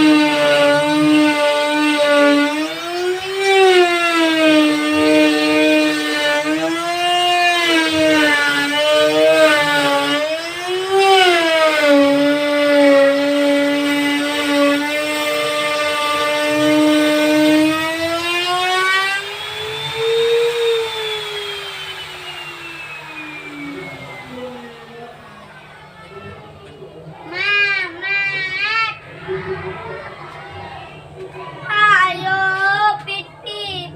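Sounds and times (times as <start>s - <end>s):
wood router whining: 0.0s - 33.1s.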